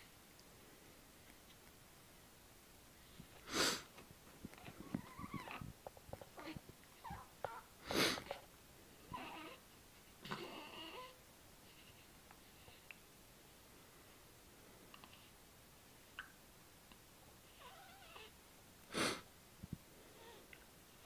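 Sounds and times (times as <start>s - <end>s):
baby fussing squeaks and coos: 4.6s - 5.7s, 6.4s - 7.7s, 9.1s - 9.6s, 17.6s - 18.3s.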